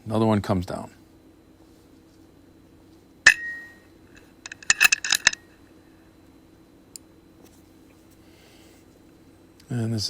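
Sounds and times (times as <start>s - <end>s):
metallic clicks of rifle action: 4.1s - 5.4s.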